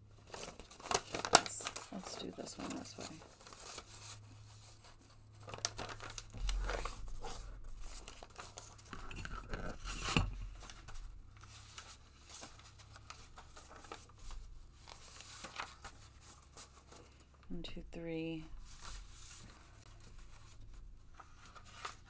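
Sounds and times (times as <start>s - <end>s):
paper rustling and crinkling: 0.2s - 17.5s, 18.6s - 22.0s.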